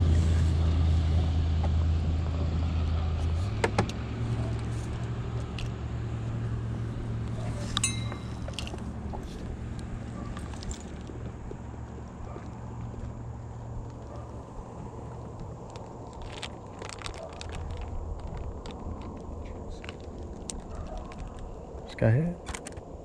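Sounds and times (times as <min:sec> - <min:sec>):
boat motor humming: 0:02.8 - 0:16.1.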